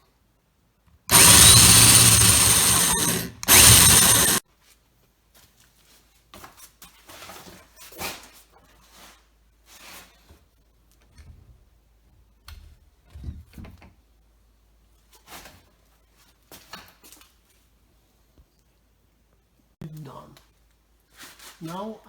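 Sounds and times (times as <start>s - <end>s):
power drill boring through wood: 1.1s - 4.4s.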